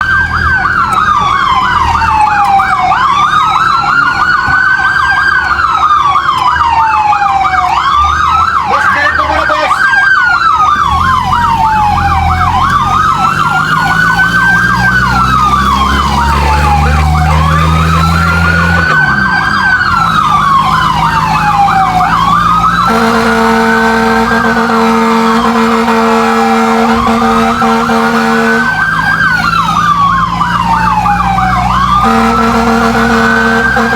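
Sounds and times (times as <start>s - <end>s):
truck engine running: 0.0s - 33.9s
wailing siren: 0.0s - 33.9s
yelping siren: 0.0s - 33.9s
steady horn blaring: 10.9s - 30.2s, 31.2s - 33.9s.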